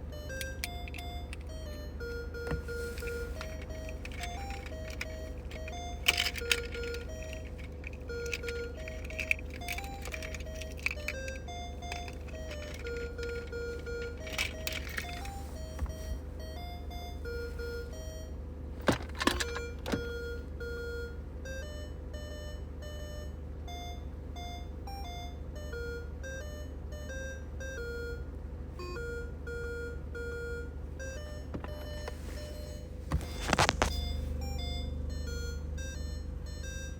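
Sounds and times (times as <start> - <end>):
toy beeping tune: 0.1 - 28.2
clicks and knocks: 2.5 - 16.0, 18.8 - 20.1.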